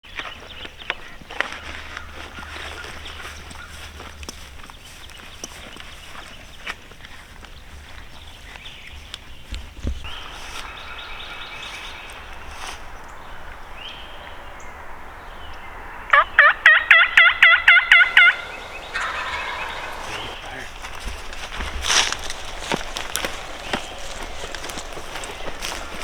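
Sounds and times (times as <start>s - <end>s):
turkey gobbling: 16.1s - 26.0s
turkey yelps: 16.1s - 26.0s.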